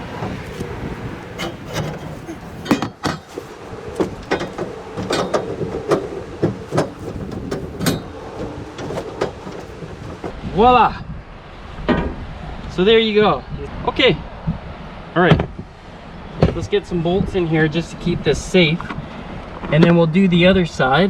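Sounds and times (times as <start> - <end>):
metal bars knocking and clanking: 0.0 - 10.4.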